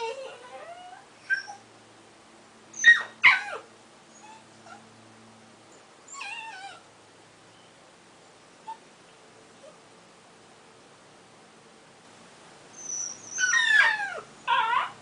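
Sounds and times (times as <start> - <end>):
dog whimpering: 0.0 - 1.6, 6.1 - 6.8, 12.8 - 15.0.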